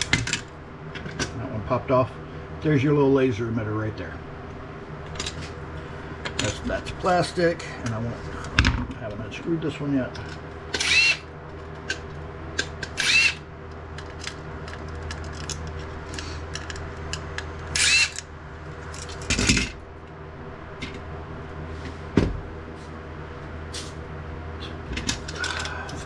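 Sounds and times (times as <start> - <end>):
electric screwdriver whirring: 10.8 - 11.2, 12.9 - 13.4, 17.7 - 18.2.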